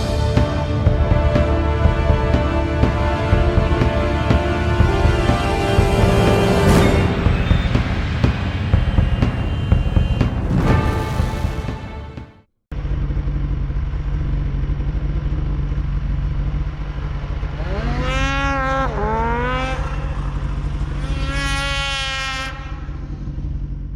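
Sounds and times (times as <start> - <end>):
engine humming: 0.0 - 10.9, 12.7 - 23.9
engine revving buzz: 0.0 - 12.0, 12.8 - 23.9
music: 0.0 - 12.5.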